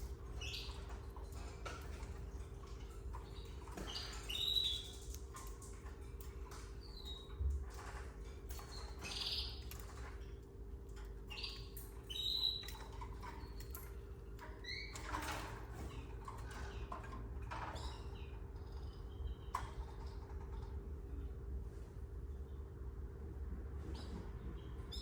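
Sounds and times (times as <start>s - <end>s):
canaries chirping: 0.0s - 10.3s, 11.1s - 20.3s
birds clicking and rustling: 0.0s - 20.9s
electrical hum: 0.0s - 25.0s.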